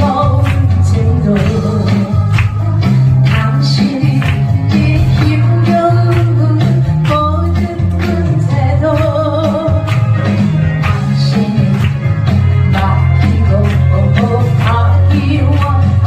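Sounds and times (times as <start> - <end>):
band playing praise music: 0.0 - 16.0
person singing: 3.3 - 9.8, 10.7 - 16.0
bass line: 4.4 - 16.0
steady drum beat: 4.8 - 7.3.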